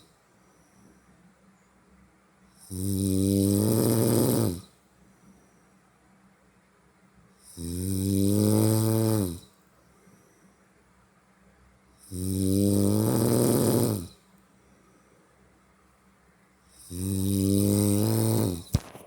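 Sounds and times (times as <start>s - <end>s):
snoring: 2.6s - 4.8s, 7.4s - 9.6s, 12.0s - 14.2s, 16.7s - 18.8s.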